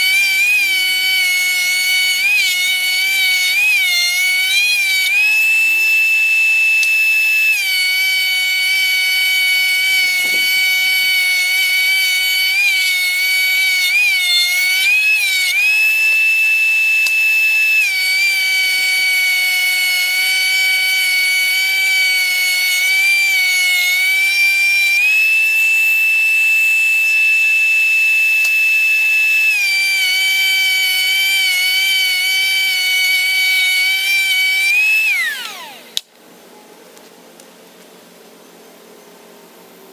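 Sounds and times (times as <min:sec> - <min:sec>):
thickness planer whining: 0:00.0 - 0:37.2.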